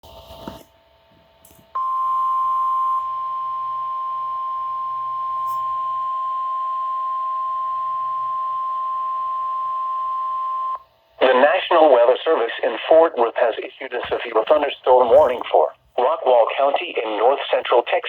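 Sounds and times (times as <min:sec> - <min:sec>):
continuous alarm beep: 0:01.8 - 0:10.8.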